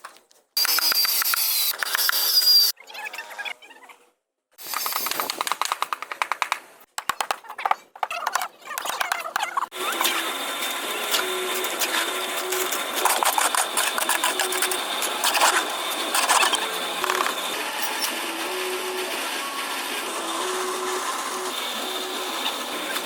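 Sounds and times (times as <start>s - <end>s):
small machine running: 0.6s - 2.8s, 9.7s - 23.0s
rapid clicking and clattering: 4.6s - 9.6s.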